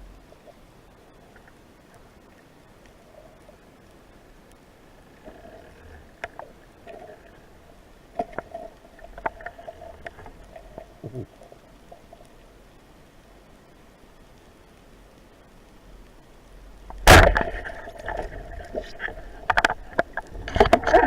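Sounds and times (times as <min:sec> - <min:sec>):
faint hum: 0:00.0 - 0:21.0
underwater clicks and knocks: 0:08.1 - 0:10.4, 0:16.9 - 0:21.0.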